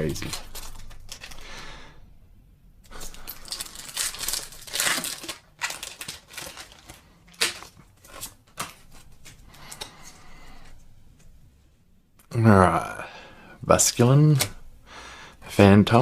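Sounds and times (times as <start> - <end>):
foil wrapper tearing and crinkling: 2.9 - 8.3.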